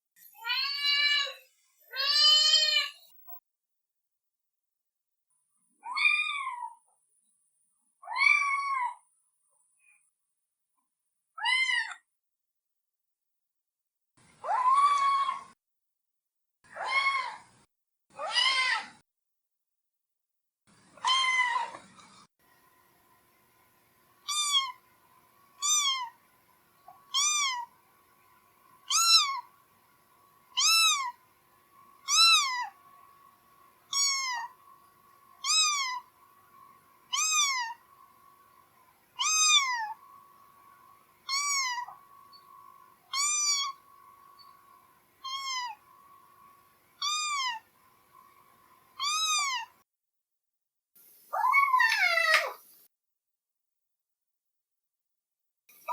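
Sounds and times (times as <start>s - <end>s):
cat meowing: 0.4s - 3.1s, 14.4s - 15.4s, 21.0s - 21.8s, 24.3s - 24.8s, 25.6s - 26.2s, 27.1s - 27.7s, 28.9s - 29.5s, 30.6s - 31.2s, 32.0s - 32.8s, 33.9s - 34.6s, 35.4s - 36.1s, 37.1s - 37.8s, 39.2s - 40.0s, 41.2s - 42.0s, 43.1s - 43.8s, 45.2s - 45.8s, 47.0s - 47.7s, 49.0s - 49.7s.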